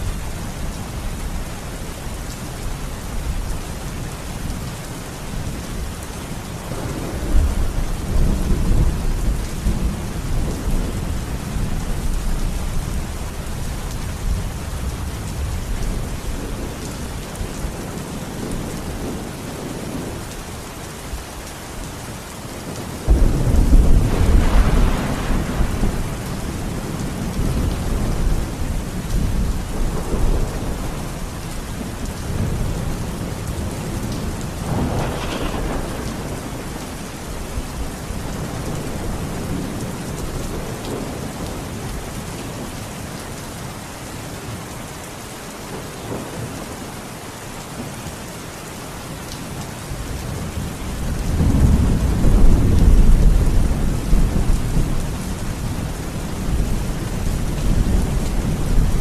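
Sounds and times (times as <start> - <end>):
heavy rain: 0.0 - 59.0
thunder rumbling: 22.7 - 41.9, 50.4 - 59.0.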